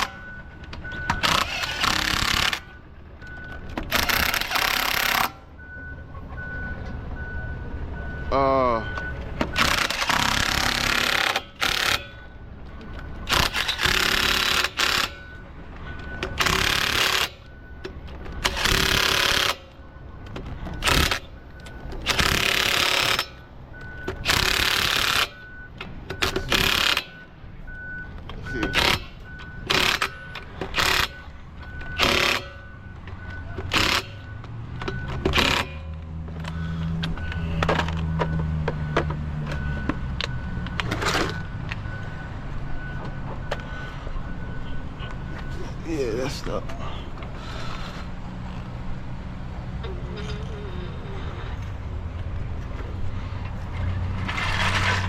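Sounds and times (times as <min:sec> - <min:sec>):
impact wrench bursts: 0:01.1 - 0:02.8, 0:03.8 - 0:05.4, 0:09.5 - 0:12.2, 0:13.3 - 0:15.4, 0:16.2 - 0:17.5, 0:18.4 - 0:19.8, 0:20.8 - 0:21.4, 0:22.0 - 0:23.4, 0:24.1 - 0:25.4, 0:26.2 - 0:27.2, 0:28.6 - 0:31.3, 0:31.9 - 0:32.6, 0:33.6 - 0:34.3, 0:35.0 - 0:36.6.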